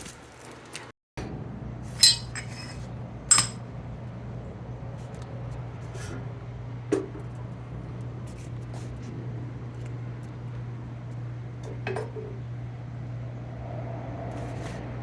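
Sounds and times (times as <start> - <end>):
metal parts clinking: 2.0 - 3.6.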